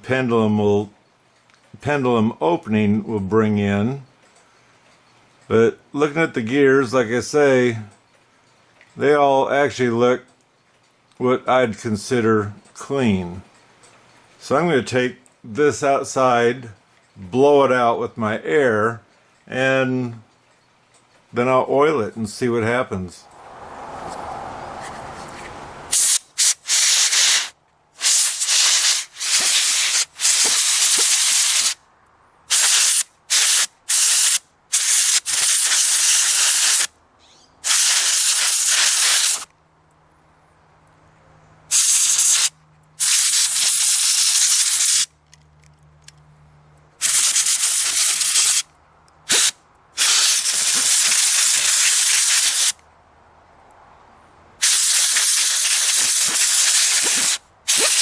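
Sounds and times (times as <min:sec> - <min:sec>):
compressed air hissing blasts: 0:25.9 - 0:31.8, 0:32.5 - 0:36.9, 0:37.6 - 0:39.5, 0:41.7 - 0:45.1, 0:47.0 - 0:48.7, 0:49.3 - 0:52.8, 0:54.6 - 0:58.0.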